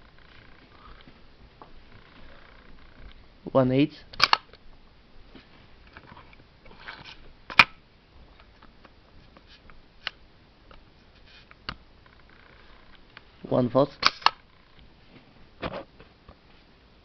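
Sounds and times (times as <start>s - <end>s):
camera shutter click: 4.2s - 4.5s, 14.0s - 14.4s
camera shutter rasp: 4.2s - 4.5s, 14.0s - 14.4s.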